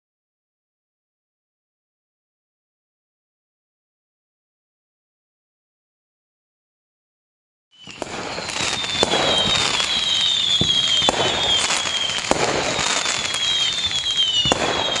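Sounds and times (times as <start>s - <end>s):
high falling whistles: 7.7s - 15.0s
fireworks bangs: 7.8s - 15.0s
fireworks crackling: 7.8s - 15.0s.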